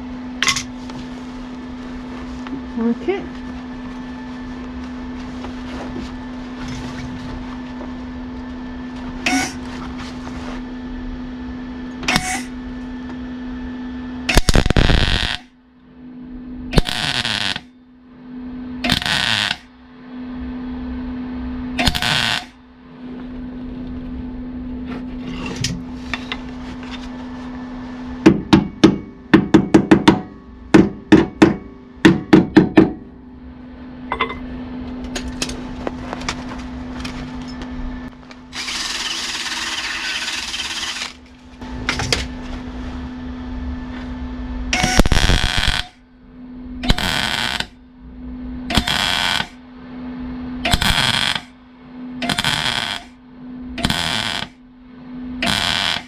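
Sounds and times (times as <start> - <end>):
steady hum: 0.0 - 56.0
short welding bursts: 14.3 - 15.5, 16.8 - 17.7, 18.9 - 19.6, 21.8 - 22.6, 44.8 - 45.9, 50.7 - 51.4, 52.3 - 53.1, 53.8 - 54.5
welding crackle: 14.3 - 15.5, 16.8 - 17.7, 18.9 - 19.7, 21.8 - 22.6, 38.6 - 41.2, 44.8 - 46.0, 46.9 - 47.8, 48.7 - 49.6, 50.7 - 51.5, 52.2 - 53.1, 53.8 - 54.6, 55.4 - 56.0
sharp metal knocks: 28.3 - 33.1.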